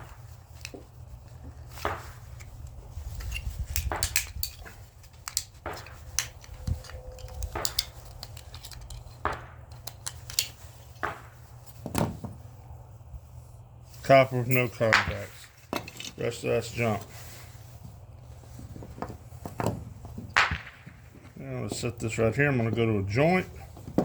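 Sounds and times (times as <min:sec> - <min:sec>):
metal scrap parts clinking: 0:03.2 - 0:10.6, 0:14.4 - 0:17.0.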